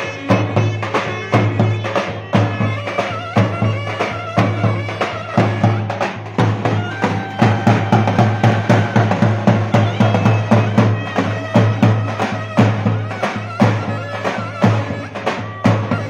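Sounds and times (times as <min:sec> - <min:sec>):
big drum beat: 0:00.0 - 0:16.0
shrill zurnas playing melody: 0:00.0 - 0:16.0.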